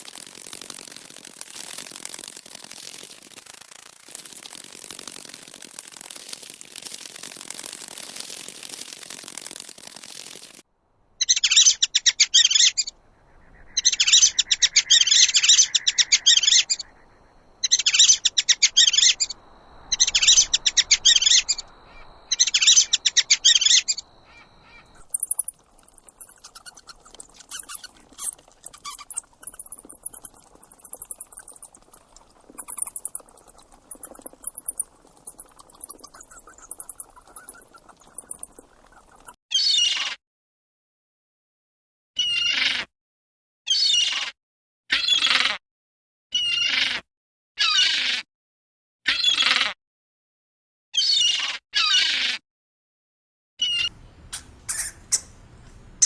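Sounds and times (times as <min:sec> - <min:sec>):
high-pitched twittering: 0:00.0 - 0:10.6, 0:13.6 - 0:39.4, 0:53.8 - 0:55.4
hissing rattle: 0:00.0 - 0:10.6, 0:24.9 - 0:39.4
rapid chirping trills: 0:00.0 - 0:10.6, 0:11.2 - 0:39.4, 0:53.7 - 0:56.0.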